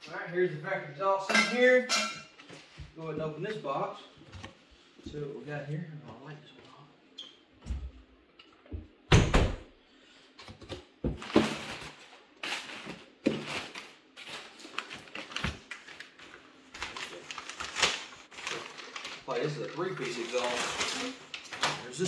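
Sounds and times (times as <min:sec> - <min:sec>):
packaging rustling: 0:11.2 - 0:22.0.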